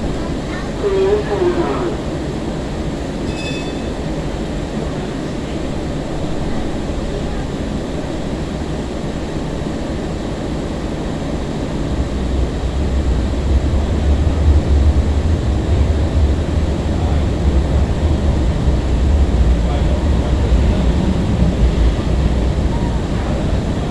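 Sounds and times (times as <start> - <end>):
light rail car rolling noise: 0.0 - 23.9
deep rumble: 11.9 - 23.9.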